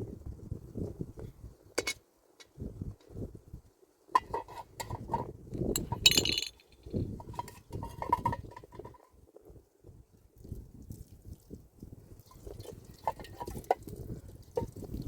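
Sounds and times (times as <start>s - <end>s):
hard objects clinking and knocking: 4.2s - 8.8s
bright rattle: 5.7s - 8.1s.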